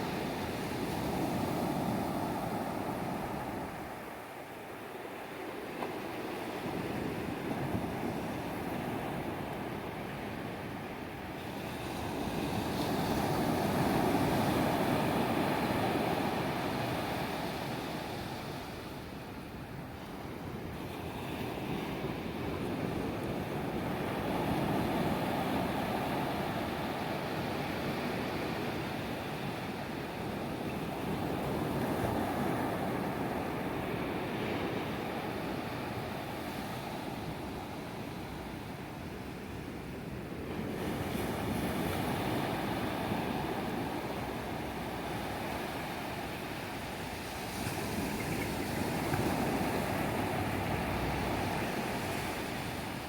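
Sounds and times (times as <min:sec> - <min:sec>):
ocean surf breaking on beach: 0:20.7 - 0:53.0.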